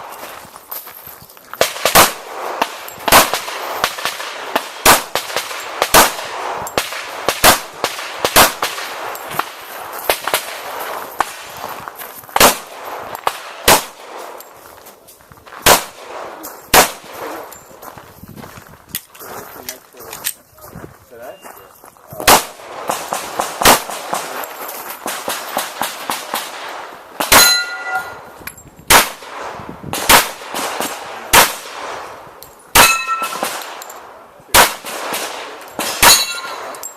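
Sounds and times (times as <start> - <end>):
pistol shots: 1.6 - 11.6, 12.3 - 14.4, 15.6 - 17.6, 22.2 - 28.3, 28.9 - 36.9
sharp clicks and pings: 27.3 - 28.7, 32.4 - 34.0, 36.0 - 36.9.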